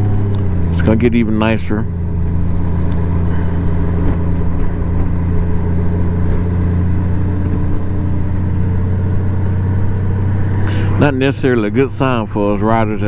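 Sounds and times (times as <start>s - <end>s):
motorcycle engine drone: 0.0s - 13.0s.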